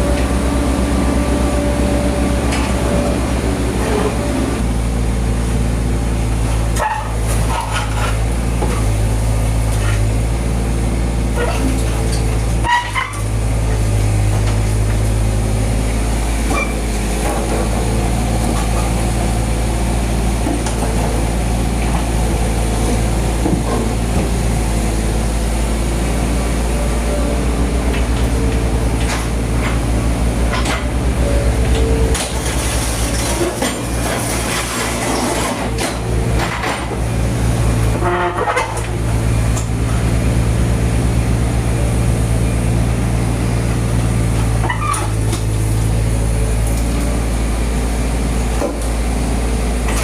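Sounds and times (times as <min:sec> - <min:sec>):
heavy engine running: 0:00.0 - 0:50.0
knocks and clanks: 0:23.4 - 0:24.4, 0:31.6 - 0:37.0.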